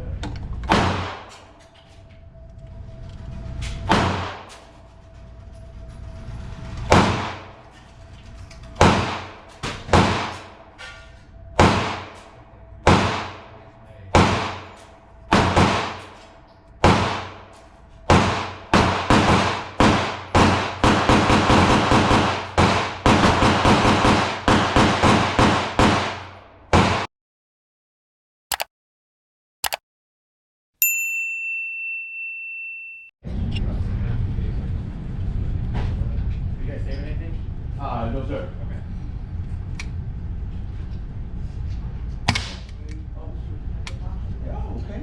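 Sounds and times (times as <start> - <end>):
pistol shots: 11.6 - 12.2, 12.8 - 13.5, 14.2 - 14.7, 15.3 - 16.0, 16.8 - 17.4, 18.1 - 27.1.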